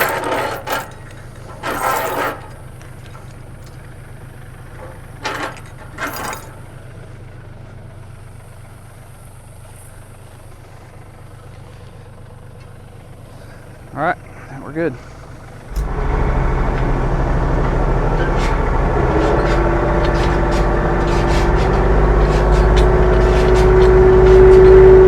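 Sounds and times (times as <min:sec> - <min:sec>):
tractor engine idling: 0:00.0 - 0:25.0.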